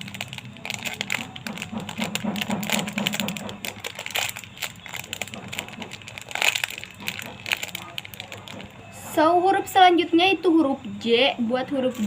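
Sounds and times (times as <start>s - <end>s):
plastic packaging crinkling: 0.0s - 8.8s.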